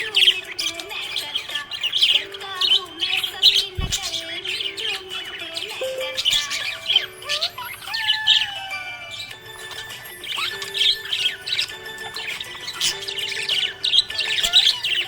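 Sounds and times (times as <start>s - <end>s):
background music: 0.0s - 15.0s
parrot squawking: 0.0s - 15.0s.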